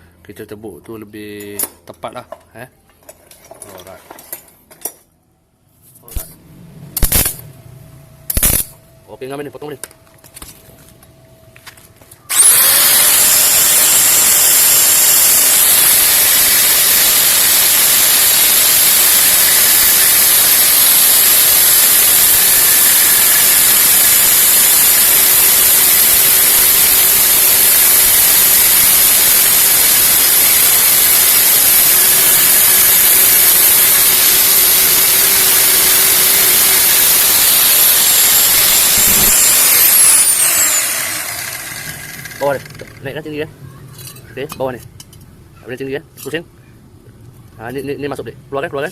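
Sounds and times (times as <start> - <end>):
cut-off disc cutting steel: 7.0 - 7.4, 8.3 - 8.8, 12.3 - 43.1.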